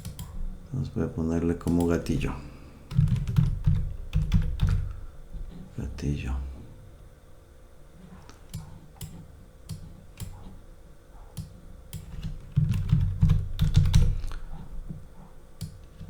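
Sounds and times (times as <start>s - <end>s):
typing on a keyboard: 2.9s - 4.9s, 11.4s - 14.2s.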